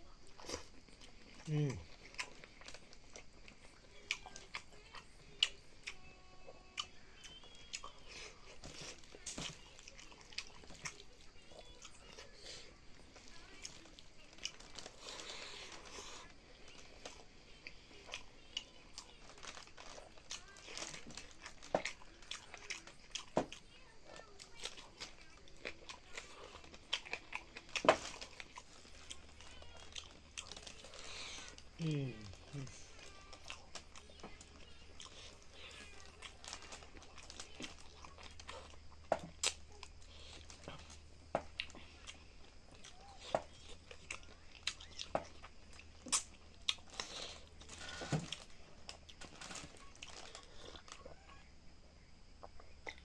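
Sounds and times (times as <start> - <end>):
mouth clicks and crackles: 24.4 - 51.3
person biting and chewing meat: 35.0 - 51.0.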